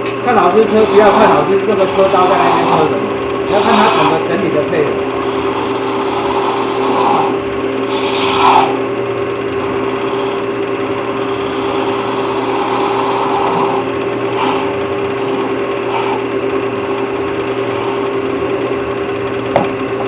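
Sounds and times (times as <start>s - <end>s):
woodworking lathe humming: 0.0s - 20.0s
turning tool scraping wood: 11.2s - 18.3s.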